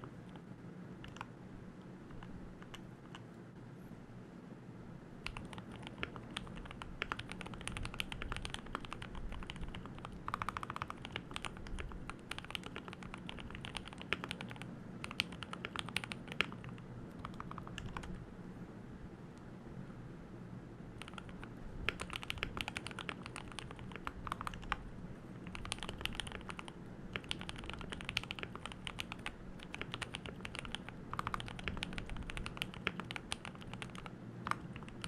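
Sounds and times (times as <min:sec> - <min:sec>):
low room noise: 0:00.0 - 0:35.0
mechanical keyboard typing: 0:01.0 - 0:01.3, 0:05.2 - 0:18.2, 0:21.0 - 0:24.8, 0:25.4 - 0:35.0.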